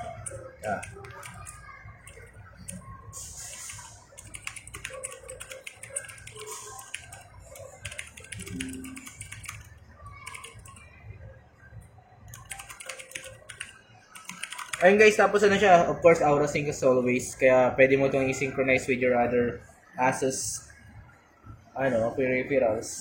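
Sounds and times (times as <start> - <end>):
mechanical keyboard keystrokes: 4.2 - 7.2, 7.8 - 9.6, 10.2 - 10.8, 12.3 - 14.8.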